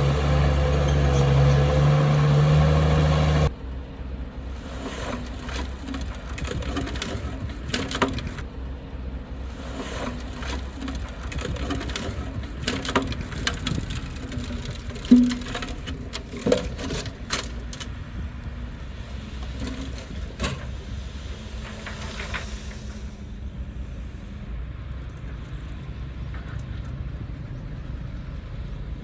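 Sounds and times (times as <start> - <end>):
diesel engine of heavy machinery: 0.0 - 29.0
scattered clicks and knocks: 5.1 - 8.5, 10.0 - 17.9.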